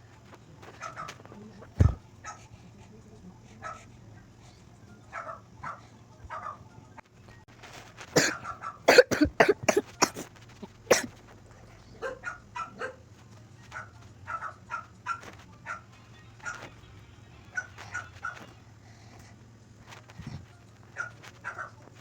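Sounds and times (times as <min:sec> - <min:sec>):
dog barking loudly: 0:08.2 - 0:09.1, 0:12.0 - 0:13.0
dog yipping: 0:12.0 - 0:13.0.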